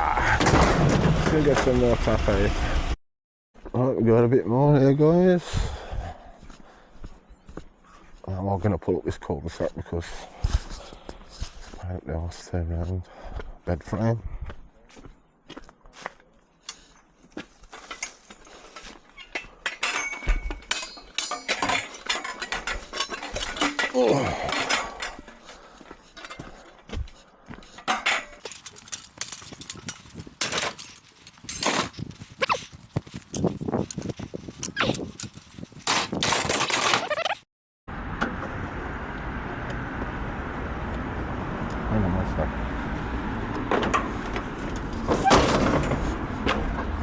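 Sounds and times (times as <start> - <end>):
loud clattering and scraping: 0.3 - 3.0, 17.6 - 27.0, 27.6 - 37.4, 43.6 - 47.0
vehicle engine and road rumble: 0.3 - 3.0, 16.6 - 36.4, 37.9 - 47.0
metal clanking on metal: 0.4 - 2.4, 17.7 - 26.9, 27.7 - 37.0, 43.7 - 46.6.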